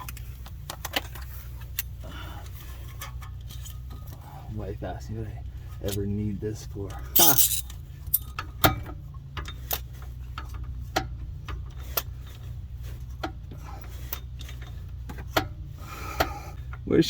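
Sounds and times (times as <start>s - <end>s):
wrench clicking: 7.2s - 8.3s.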